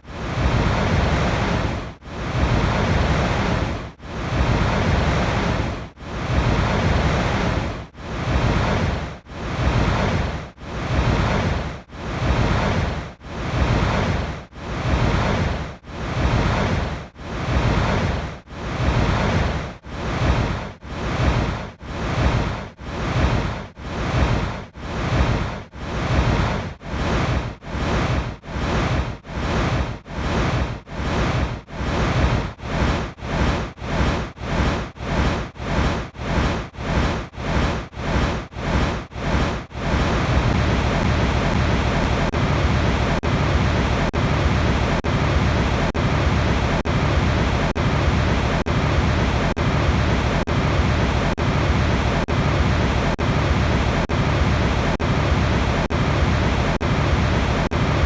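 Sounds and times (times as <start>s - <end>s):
rushing water: 37.6s - 58.0s.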